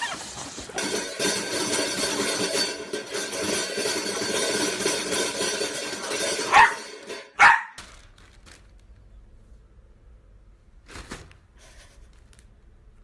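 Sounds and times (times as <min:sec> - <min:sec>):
dog barking: 0:06.5 - 0:06.8, 0:07.4 - 0:07.8.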